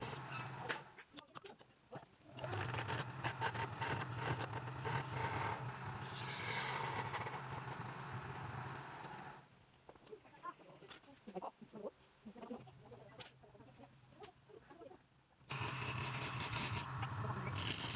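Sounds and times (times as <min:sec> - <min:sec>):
lathe motor hum: 0:00.0 - 0:00.9, 0:02.5 - 0:09.4, 0:15.5 - 0:17.9
tool scraping spinning wood: 0:02.4 - 0:09.4, 0:15.5 - 0:17.9.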